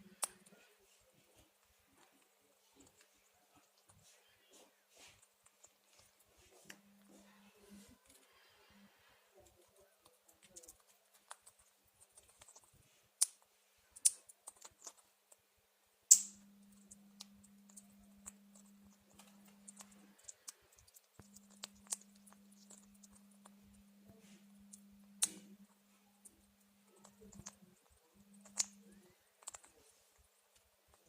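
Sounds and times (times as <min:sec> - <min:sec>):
parrot beak clicks and crunches: 0:09.5 - 0:15.1, 0:16.1 - 0:23.6, 0:24.7 - 0:29.8
steady low hum: 0:16.3 - 0:31.0.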